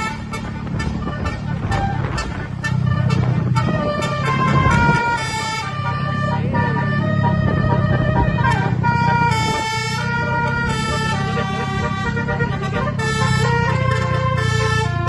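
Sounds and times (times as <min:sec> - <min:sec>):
bus air horn playing a tune: 0:00.0 - 0:15.0
low engine rumble: 0:00.0 - 0:15.0.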